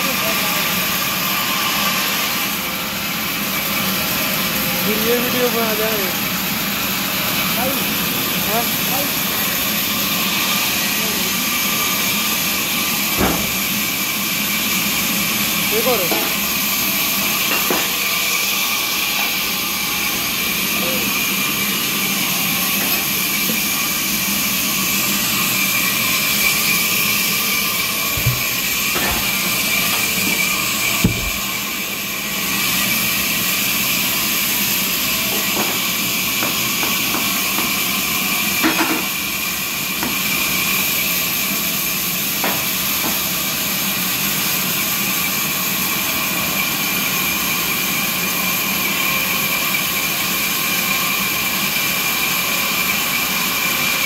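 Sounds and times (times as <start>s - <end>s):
sawmill machinery whining: 0.0s - 54.0s
knocks: 28.2s - 29.2s, 31.0s - 31.4s.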